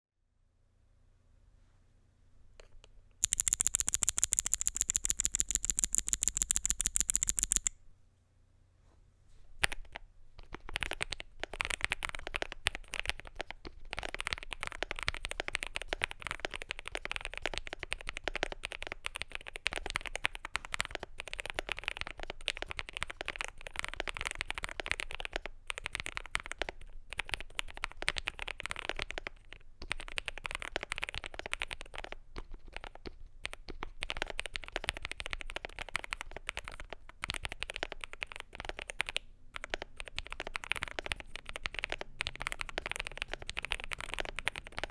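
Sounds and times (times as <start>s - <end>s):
mechanical keyboard typing: 3.2s - 7.7s, 10.6s - 44.9s.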